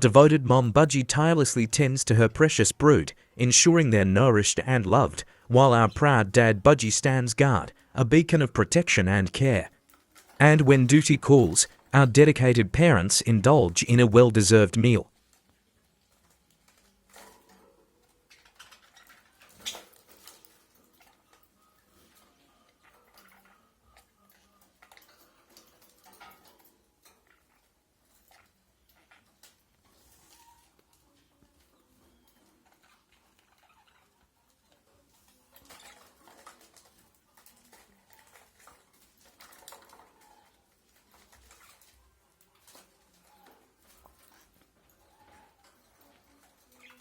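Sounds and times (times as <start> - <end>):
small clicks and scratches: 15.2 - 47.0.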